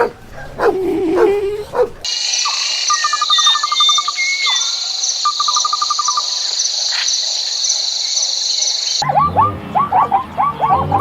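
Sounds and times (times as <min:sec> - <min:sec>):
bird trilling: 0:00.0 - 0:11.0
insect chorus: 0:02.0 - 0:09.0.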